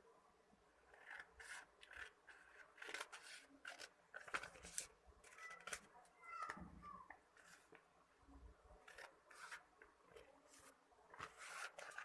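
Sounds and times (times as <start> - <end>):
scissors cutting paper: 0.9 - 5.9, 8.8 - 12.0.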